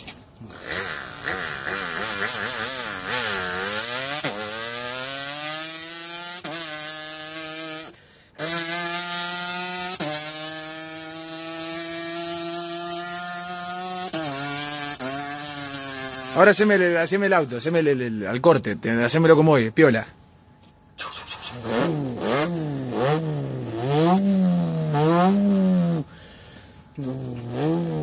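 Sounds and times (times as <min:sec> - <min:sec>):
boy imitating racing engine: 0:00.4 - 0:07.8, 0:21.0 - 0:26.1, 0:27.0 - 0:28.0.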